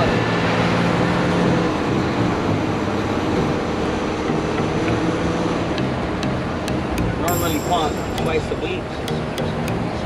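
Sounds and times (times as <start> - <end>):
road noise: 0.0 - 10.0
truck engine drone: 0.0 - 10.0.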